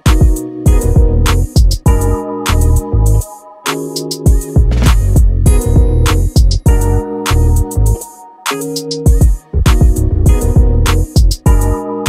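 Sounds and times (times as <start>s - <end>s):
low drum thumps: 4.3s - 6.8s.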